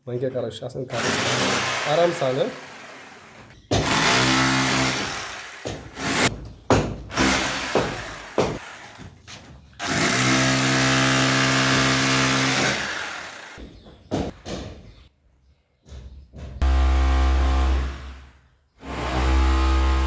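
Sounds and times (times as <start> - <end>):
power tool motor running: 0.9 - 6.3, 7.1 - 9.0, 9.8 - 13.6.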